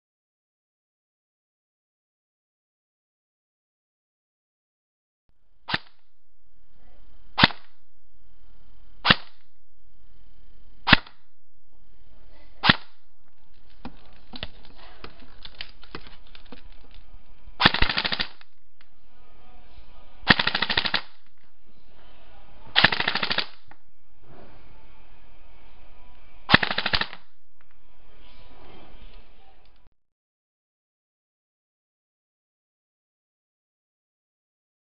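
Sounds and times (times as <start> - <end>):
airsoft gun single shots: 5.7 - 6.0, 7.4 - 7.8, 9.0 - 9.5, 10.8 - 11.3, 12.6 - 13.0, 17.6 - 18.5, 20.3 - 21.2, 22.8 - 23.7, 26.5 - 27.3
airsoft gun full-auto bursts: 17.6 - 18.5, 20.3 - 21.2, 22.8 - 23.6, 26.5 - 27.3.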